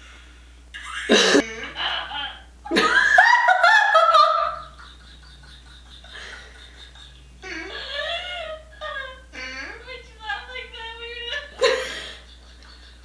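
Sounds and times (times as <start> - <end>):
person laughing loudly: 1.0 - 9.1.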